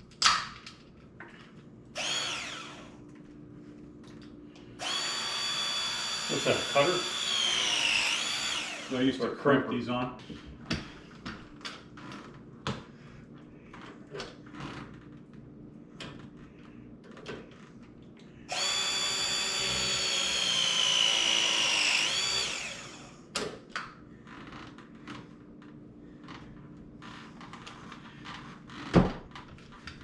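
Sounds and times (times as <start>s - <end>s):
tools and pipe clicking and knocking: 0.0s - 1.5s
crimping tool motor whining: 2.0s - 2.9s, 4.8s - 9.2s, 18.5s - 23.2s.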